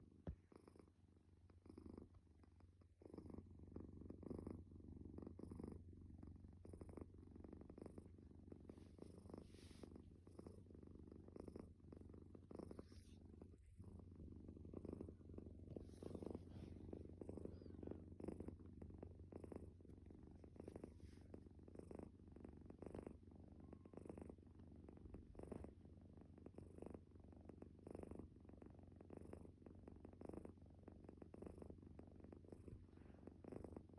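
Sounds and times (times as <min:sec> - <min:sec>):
cat snoring: 0:02.9 - 0:33.9.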